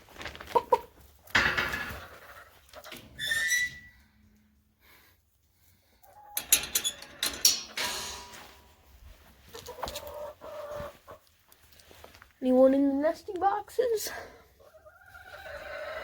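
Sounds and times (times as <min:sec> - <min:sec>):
hens clucking softly: 0:09.5 - 0:11.4, 0:14.4 - 0:16.0.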